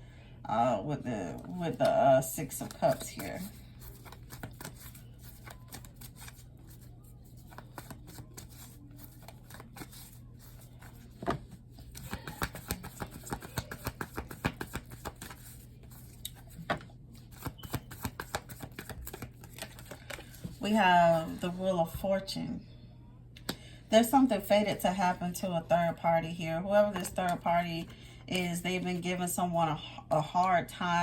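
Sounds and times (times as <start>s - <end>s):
low steady hum: 0.0s - 31.0s
cards shuffled by hand: 2.6s - 20.6s.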